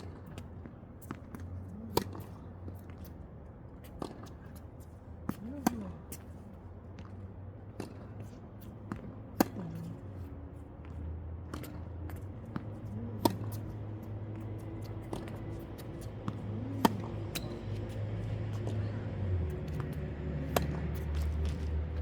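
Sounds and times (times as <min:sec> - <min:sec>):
tennis ball struck by racket: 0:11.5 - 0:18.8, 0:19.6 - 0:21.7.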